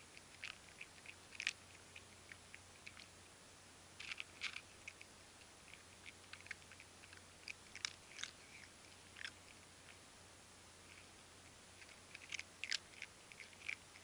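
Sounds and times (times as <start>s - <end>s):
cat chewing food: 0.0s - 14.0s.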